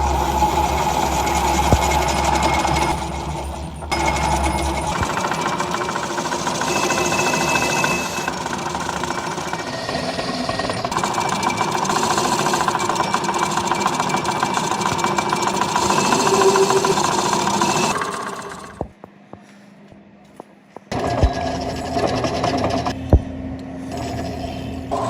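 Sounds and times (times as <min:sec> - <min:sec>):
workshop machine rattling: 0:00.0 - 0:18.9.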